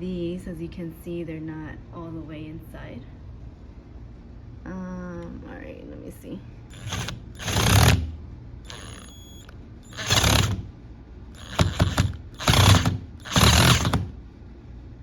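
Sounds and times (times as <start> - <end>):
cordless drill driving screws: 6.7 - 8.1, 8.7 - 10.7, 11.4 - 14.1.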